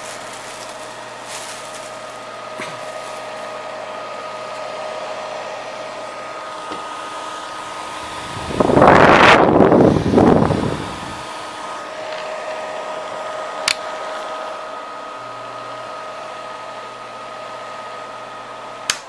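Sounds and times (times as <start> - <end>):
hair dryer running: 0.0 - 19.0
hair dryer switch click: 13.6 - 13.9.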